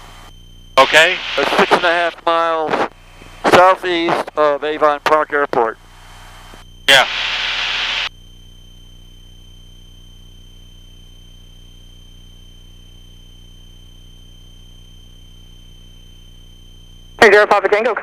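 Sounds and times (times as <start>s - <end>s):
radio static burst: 0.0s - 8.1s, 17.2s - 18.0s
high-pitched electrical whine: 0.0s - 18.0s.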